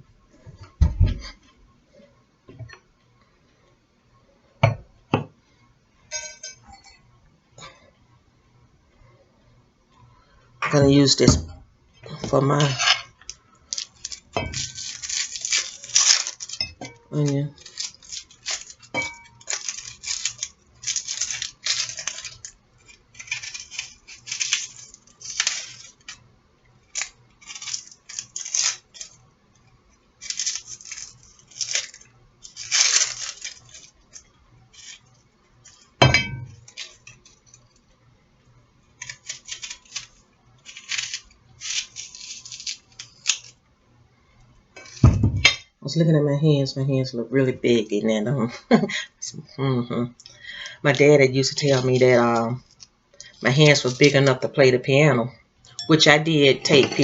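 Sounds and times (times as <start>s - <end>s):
utensils and dishes clinking: 6.1s - 7.0s, 13.8s - 22.4s, 36.0s - 37.0s, 56.6s - 57.0s.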